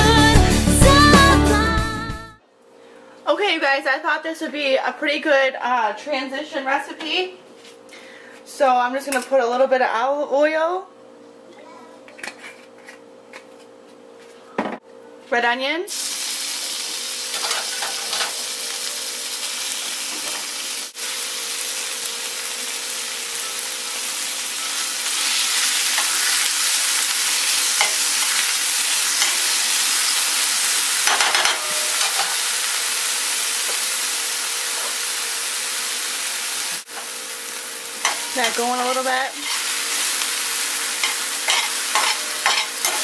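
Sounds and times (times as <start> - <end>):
onion sizzling in frying pan: 15.9 - 43.0.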